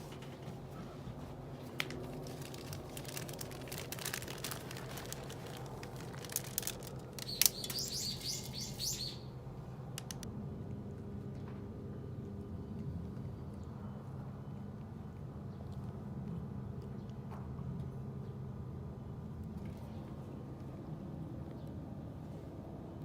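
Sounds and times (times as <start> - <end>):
bird chirping: 7.2 - 9.4.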